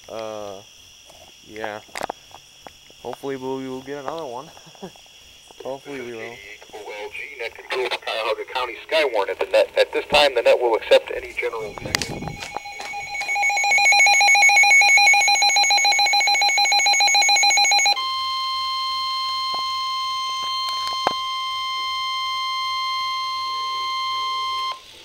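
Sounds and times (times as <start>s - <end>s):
rapid pulsing alarm tone: 5.8s - 25.0s
steady single-pitch alarm tone: 11.0s - 25.0s.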